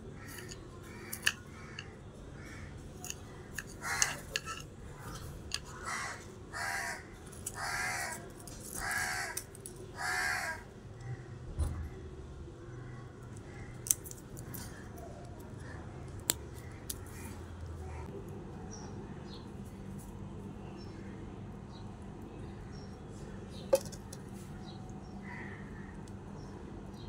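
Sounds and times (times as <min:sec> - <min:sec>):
bird giving harsh calls: 0:03.7 - 0:04.6, 0:05.7 - 0:08.2, 0:08.8 - 0:09.4, 0:10.0 - 0:10.6.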